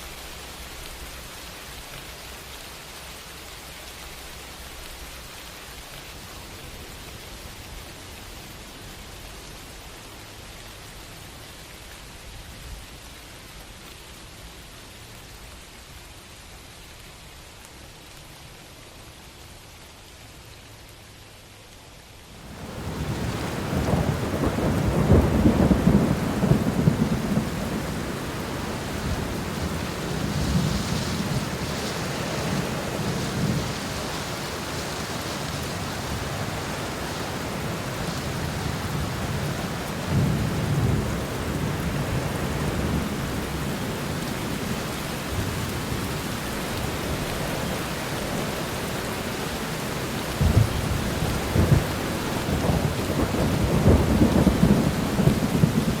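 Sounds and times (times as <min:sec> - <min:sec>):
steady rain: 0:00.0 - 0:56.0
thunder rumbling: 0:22.4 - 0:56.0.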